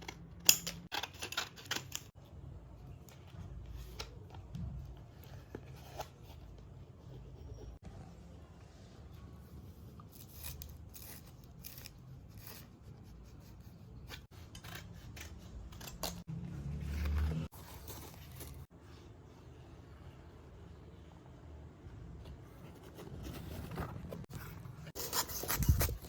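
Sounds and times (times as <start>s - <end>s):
scissors snipping material: 14.1s - 16.3s.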